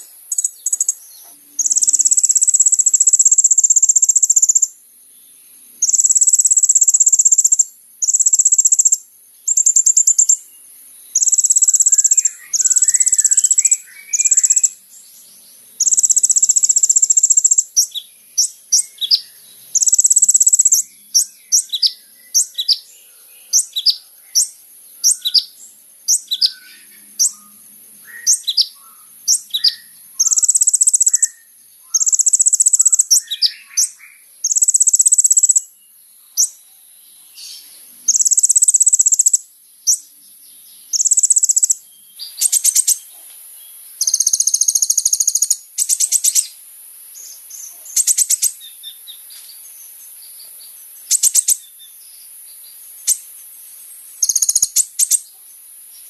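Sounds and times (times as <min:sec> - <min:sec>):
bird buzzing trills: 0:00.0 - 0:04.7, 0:05.8 - 0:10.4, 0:11.1 - 0:22.8, 0:26.1 - 0:31.3, 0:44.0 - 0:46.5, 0:54.2 - 0:55.3
faint high hiss: 0:00.0 - 0:56.0.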